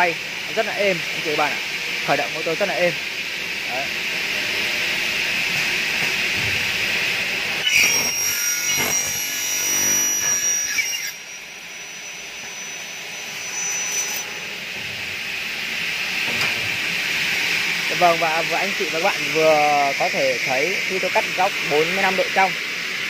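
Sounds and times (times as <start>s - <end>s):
saw blade spinning with whine: 6.7s - 16.2s, 16.9s - 23.0s
saw screeching through aluminium: 7.6s - 14.7s.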